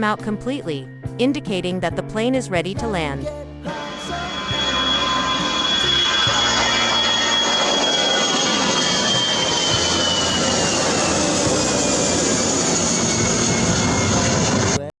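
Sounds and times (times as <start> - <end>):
jet engines roaring and whining: 3.7 - 14.8.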